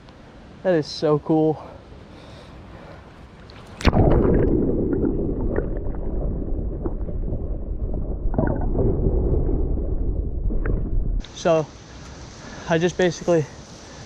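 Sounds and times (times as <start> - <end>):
sharp splash: 3.6 - 7.1.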